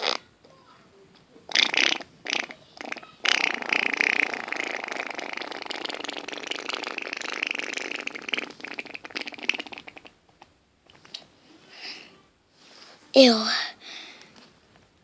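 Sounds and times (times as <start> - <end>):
child blowing raspberry: 1.5 - 10.1.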